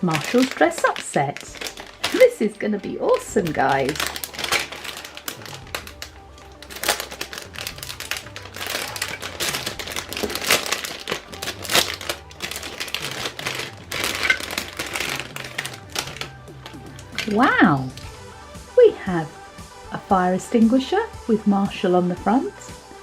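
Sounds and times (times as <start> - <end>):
packaging crinkling: 0.0 - 18.2
background music: 0.0 - 23.0.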